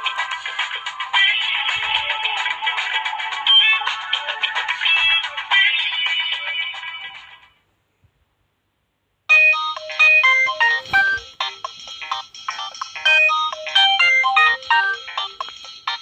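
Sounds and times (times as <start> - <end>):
mobile phone ringtone: 9.3 - 16.0.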